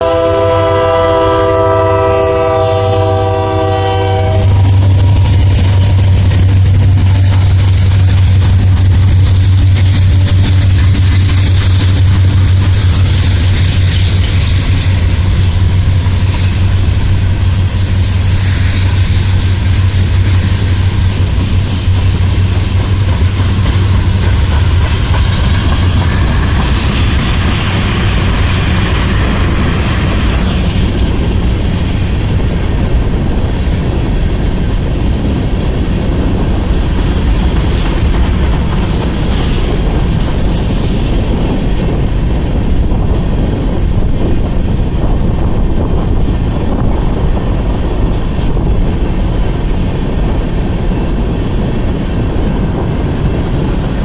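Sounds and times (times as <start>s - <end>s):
locomotive air horn: 0.0s - 4.8s
freight train rumbling past: 0.0s - 54.0s.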